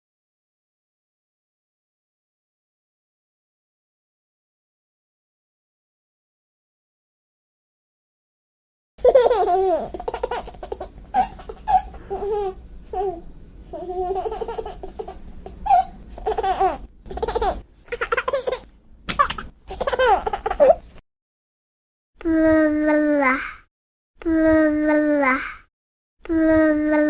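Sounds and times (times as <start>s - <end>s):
baby laughing: 9.0s - 13.2s, 13.8s - 20.8s, 22.2s - 23.6s, 24.3s - 25.6s, 26.3s - 27.0s.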